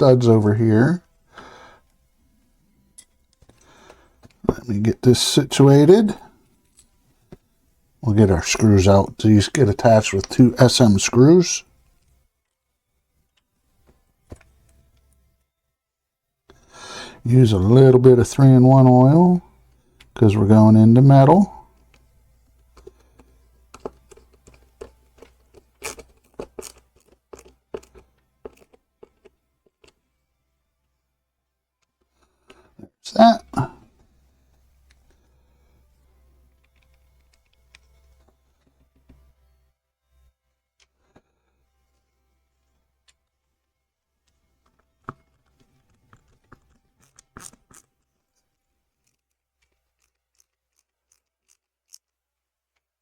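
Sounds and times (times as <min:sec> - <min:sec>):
small parts handling: 0:22.6 - 0:30.0, 0:44.2 - 0:52.9.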